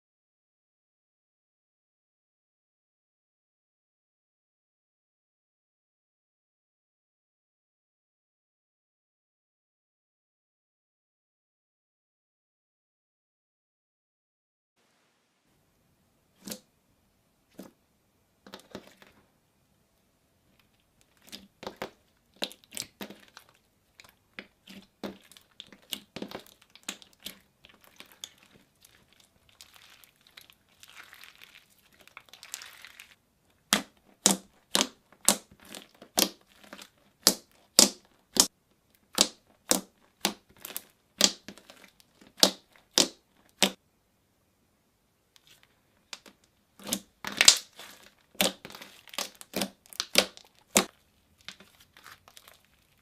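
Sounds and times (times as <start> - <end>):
slime squishing and clicking: 21.0 - 43.8, 46.1 - 52.7.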